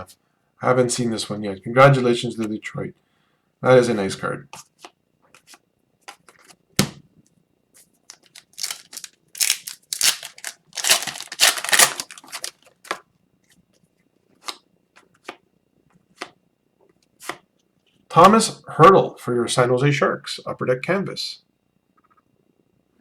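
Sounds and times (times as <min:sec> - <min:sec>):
card pack wrappers crinkling: 0:08.1 - 0:13.0
cards clicking: 0:08.1 - 0:13.0.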